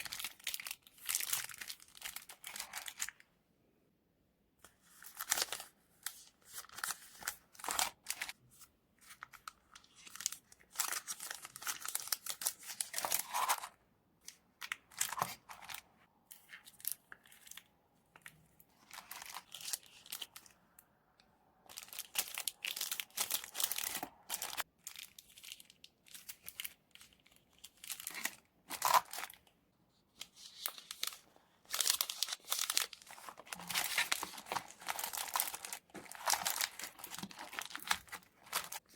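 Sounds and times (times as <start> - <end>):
paper crinkling: 4.9 - 20.5, 30.1 - 38.9.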